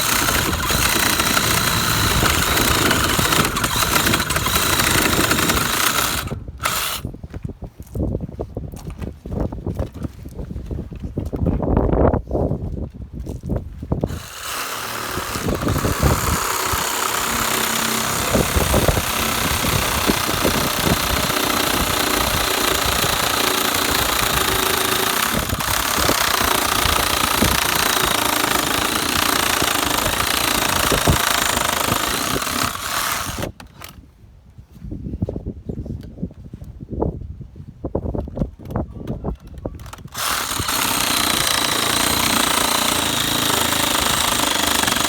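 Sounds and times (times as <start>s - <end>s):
loud motor-driven machine: 0.0s - 7.1s, 14.0s - 34.0s, 39.8s - 45.0s.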